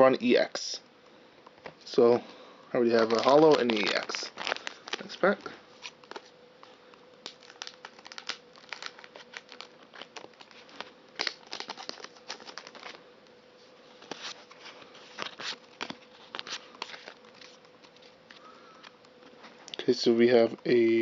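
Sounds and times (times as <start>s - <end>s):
faint steady hum: 0.0s - 21.0s
foil wrapper tearing and crinkling: 2.9s - 6.3s, 7.2s - 13.0s, 14.0s - 18.9s.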